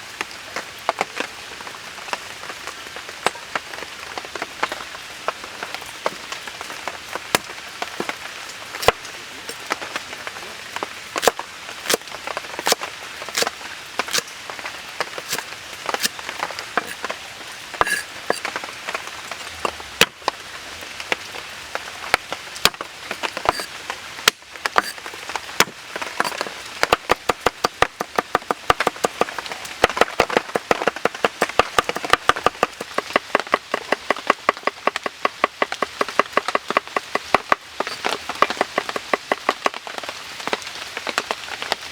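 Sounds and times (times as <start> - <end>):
knife chopping on wooden board: 11.2 - 12.0, 12.6 - 13.5, 15.2 - 15.4, 17.8 - 18.4, 23.1 - 23.7.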